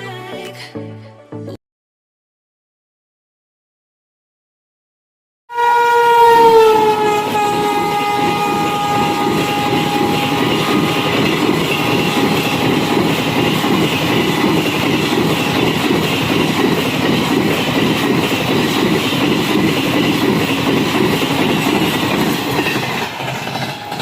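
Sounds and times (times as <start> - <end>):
shrill train air horn: 5.5 - 13.6
train coaches rushing and clattering: 6.0 - 24.0.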